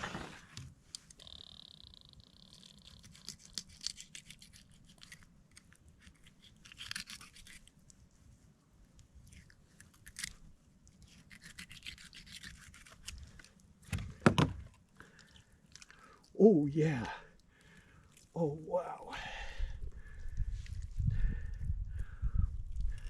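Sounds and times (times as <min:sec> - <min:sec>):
knife scraping and clicking: 0:11.1 - 0:13.2.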